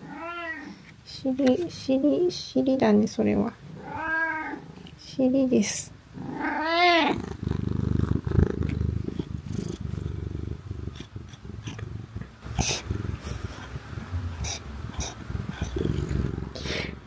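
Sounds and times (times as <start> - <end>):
cat meowing: 0.0 - 0.7, 3.8 - 4.7, 6.3 - 7.2
cat rattling purr: 6.1 - 16.7.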